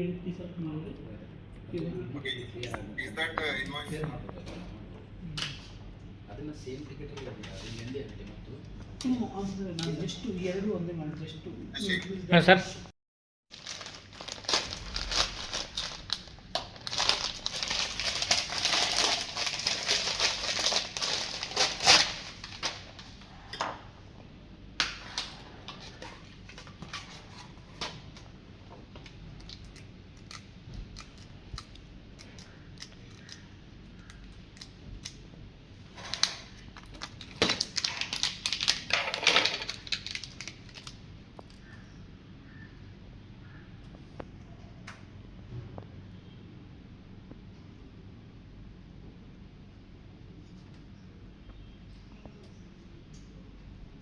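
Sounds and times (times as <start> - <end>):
crinkling and rustling: 13.5 - 23.3, 35.9 - 41.6.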